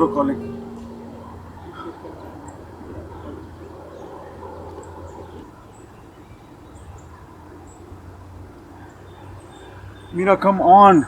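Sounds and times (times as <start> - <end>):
low steady hum: 0.0 - 3.7.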